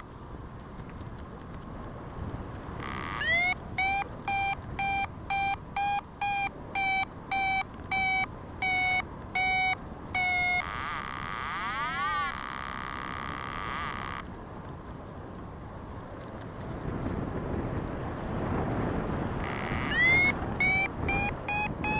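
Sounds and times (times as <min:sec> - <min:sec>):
variometer beeping: 0:02.8 - 0:14.2, 0:19.4 - 0:21.9.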